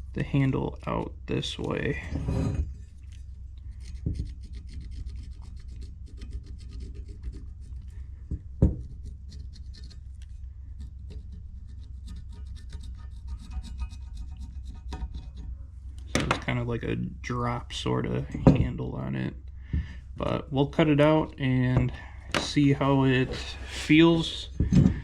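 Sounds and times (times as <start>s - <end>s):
drawing tool scratching steel: 3.8s - 7.9s, 8.8s - 15.5s.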